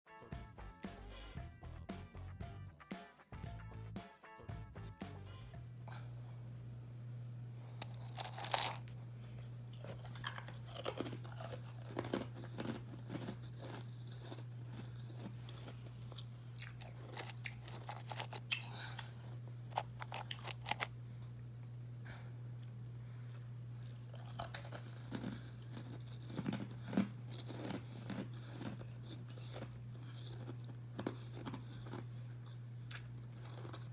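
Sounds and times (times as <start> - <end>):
music with steady drum beat: 0.1 - 5.8
steady low hum: 5.2 - 33.9
ice crunching while chewed: 7.7 - 33.9.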